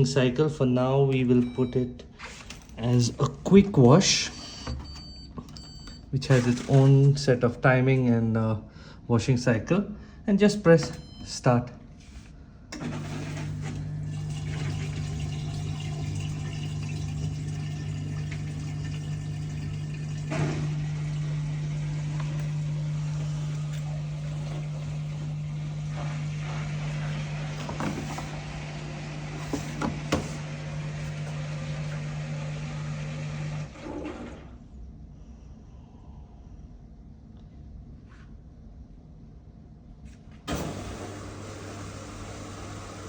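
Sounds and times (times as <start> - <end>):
washing machine low hum: 0.0 - 7.5, 10.7 - 11.4, 12.0 - 34.8, 40.2 - 43.0
water rushing into washing machine: 12.8 - 34.6, 40.5 - 43.0.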